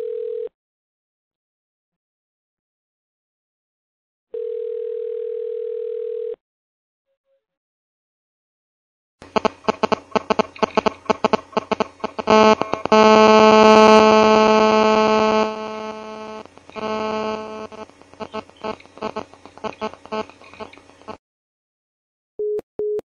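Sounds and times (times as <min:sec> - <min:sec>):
crackling clicks: 0:09.2 - 0:21.2
harsh electronic buzz: 0:09.2 - 0:21.2.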